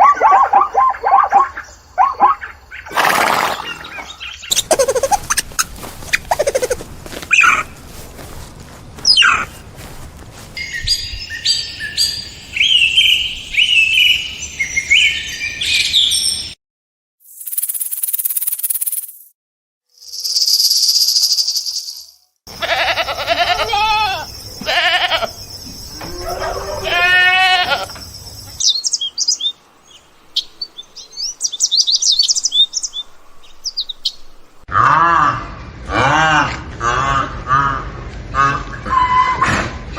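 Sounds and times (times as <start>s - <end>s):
bird chirping: 3.6s - 8.3s, 9.0s - 9.6s, 10.6s - 16.6s, 23.1s - 34.7s.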